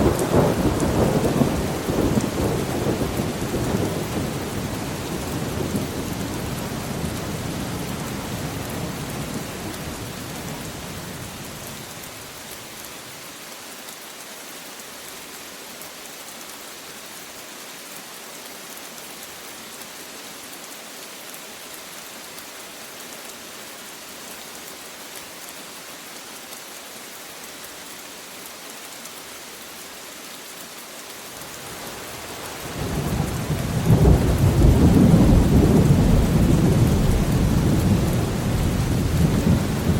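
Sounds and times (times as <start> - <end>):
steady rain falling: 0.0 - 39.9
thunder rumbling: 32.8 - 39.9.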